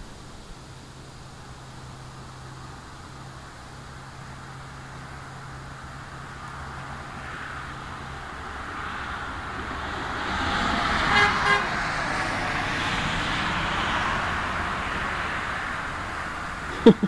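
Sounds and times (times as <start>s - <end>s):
car passing by: 4.8s - 16.7s
car horn double toot: 11.1s - 11.7s.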